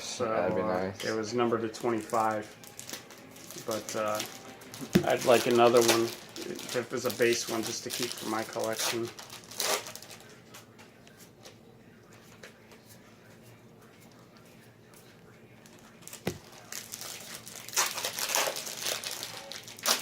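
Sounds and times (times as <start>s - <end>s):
card packs rustling: 1.6s - 10.4s, 15.6s - 20.0s
wrappers crinkling and tearing: 1.7s - 10.7s, 15.6s - 20.0s.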